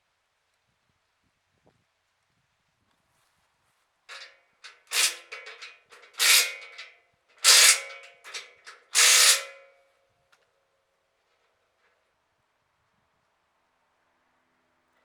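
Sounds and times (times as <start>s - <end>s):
metal clanking and rattling: 4.1s - 9.6s
faint metallic ring: 4.1s - 10.0s.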